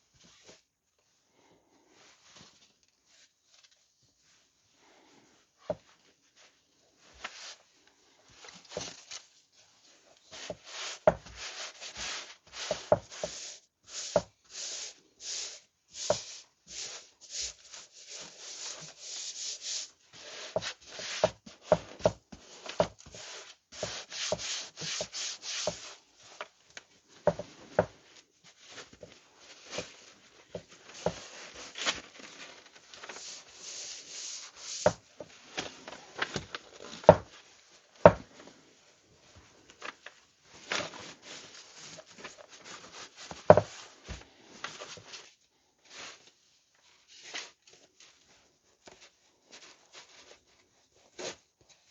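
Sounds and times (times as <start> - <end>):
hands rubbing fabric: 9.8 - 26.4, 33.1 - 35.3.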